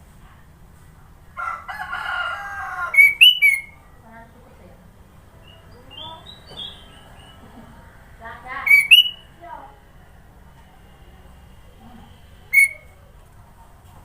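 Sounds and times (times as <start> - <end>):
rooster crowing: 1.4 - 3.6
bird whistled chirps: 3.0 - 3.8, 5.4 - 7.4, 8.6 - 9.3, 12.5 - 13.0
soft rising bird notes: 5.4 - 7.6.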